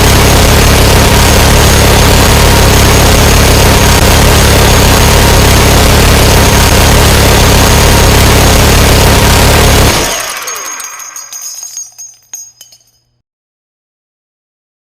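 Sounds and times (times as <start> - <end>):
minigun firing: 4.4 - 11.8
spent casings clinking: 10.0 - 13.2.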